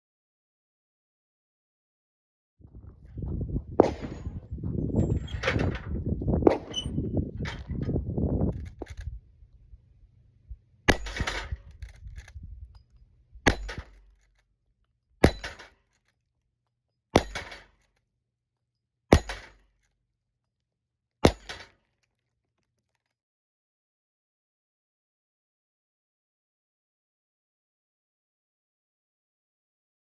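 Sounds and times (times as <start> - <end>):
rifle gunshots: 2.8 - 7.0, 10.9 - 11.6, 13.5 - 14.0.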